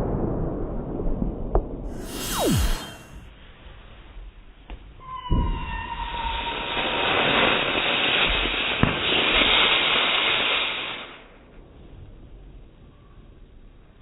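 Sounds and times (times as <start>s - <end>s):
firework rocket hissing: 1.9s - 3.2s.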